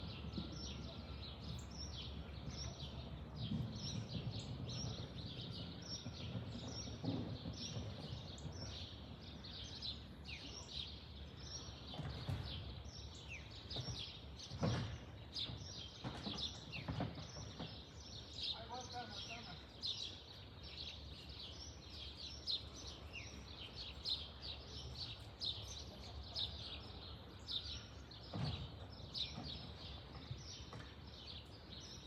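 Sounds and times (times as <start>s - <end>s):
jet airliner rumble overhead: 0.0s - 17.9s
small birds chirping: 0.0s - 32.0s.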